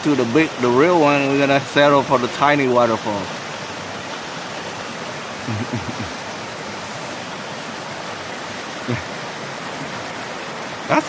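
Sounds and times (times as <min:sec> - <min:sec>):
small waterfall splashing: 0:00.0 - 0:11.0.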